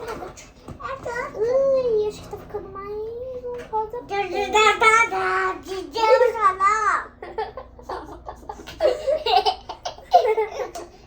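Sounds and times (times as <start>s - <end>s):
girl laughing: 7.2s - 10.9s.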